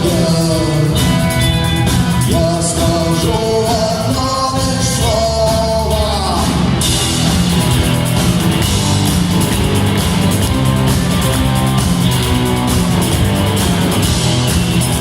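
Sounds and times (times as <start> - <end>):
person singing: 0.0 - 6.7
rock band playing: 0.0 - 15.0.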